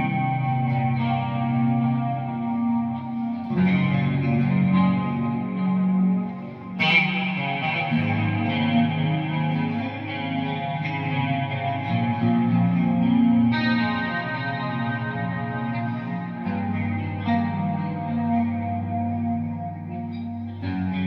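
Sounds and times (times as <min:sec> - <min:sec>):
clean electric guitar chords: 0:00.0 - 0:21.0.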